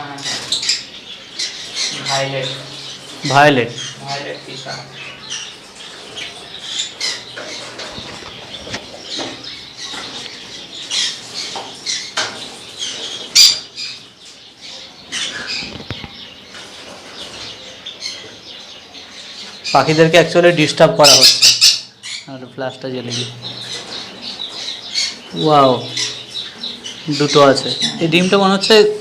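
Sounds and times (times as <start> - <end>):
lovebirds chirping and squawking: 0.0 - 29.0.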